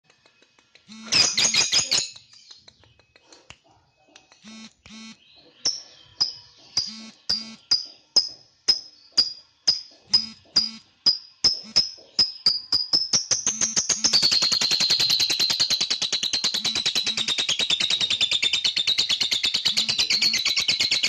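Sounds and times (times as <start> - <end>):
lovebird chirping: 0.2 - 21.0.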